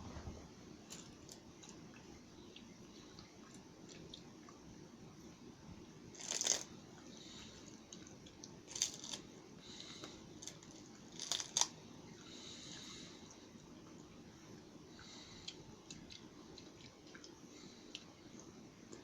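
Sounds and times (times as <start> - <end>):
seaweed snack crackling and crunching: 6.1 - 6.7, 8.7 - 9.2, 10.4 - 11.8
faint chewing: 6.2 - 14.2, 14.9 - 19.0.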